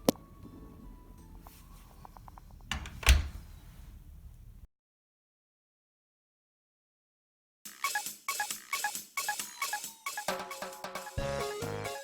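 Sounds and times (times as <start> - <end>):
music with steady drum beat: 7.7 - 12.0.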